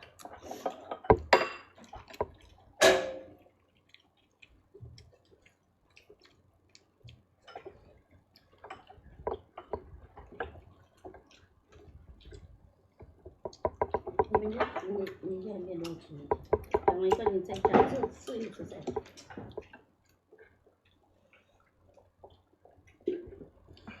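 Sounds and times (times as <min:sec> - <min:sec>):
dishes and cutlery clinking: 0:00.6 - 0:03.4.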